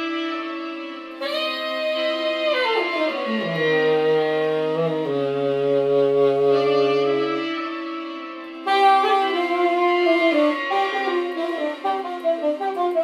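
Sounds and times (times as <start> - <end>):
saxophone with effects: 0.0 - 13.0.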